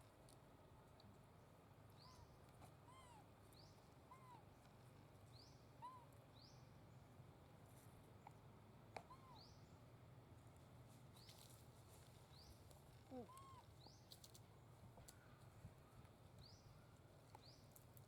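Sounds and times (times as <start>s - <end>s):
faint animal calls: 13.1s - 13.8s.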